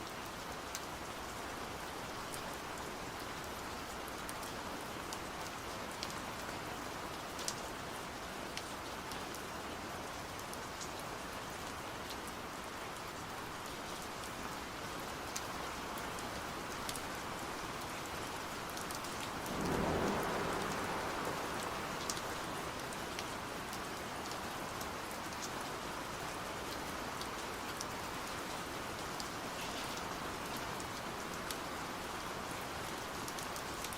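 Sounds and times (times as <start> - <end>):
steady rain falling: 0.0 - 33.9
low rumble: 19.3 - 22.9.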